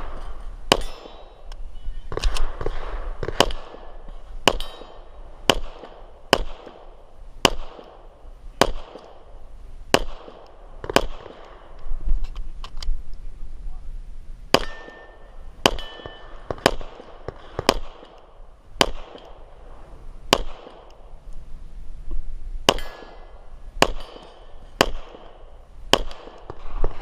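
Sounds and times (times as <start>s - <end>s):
pistol shots: 0.0s - 1.5s, 2.1s - 11.8s, 14.5s - 19.5s, 20.3s - 21.1s, 22.6s - 27.0s.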